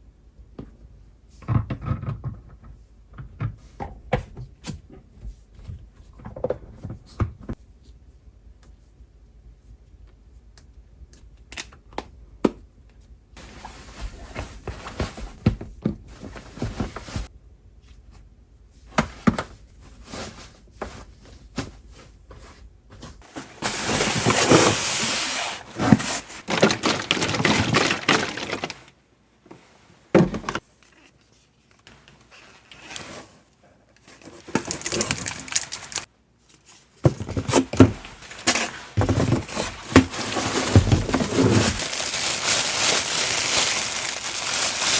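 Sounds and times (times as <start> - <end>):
utensils and containers clattering: 23.2 - 28.9, 34.2 - 36.1, 37.1 - 44.9.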